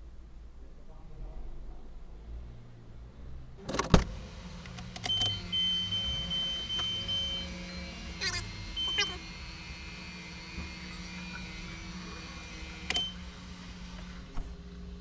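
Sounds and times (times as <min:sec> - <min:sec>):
rattling clicks: 0:03.6 - 0:07.9, 0:09.6 - 0:15.0
car door clunking open: 0:03.6 - 0:15.0
high-pitched warning beep: 0:05.1 - 0:09.3.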